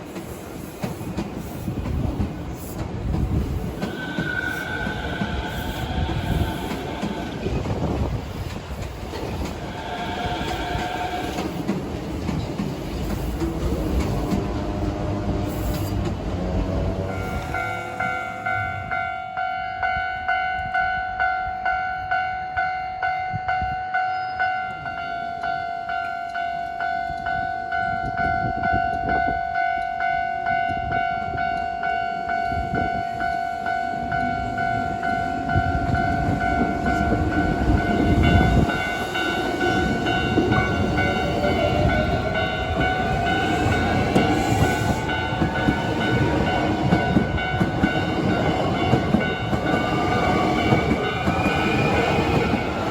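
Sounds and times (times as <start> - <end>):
train wheels clattering on rails: 0.0 - 18.6, 34.0 - 52.9
train motor whine: 3.3 - 18.9
level-crossing bell ringing: 17.1 - 52.9.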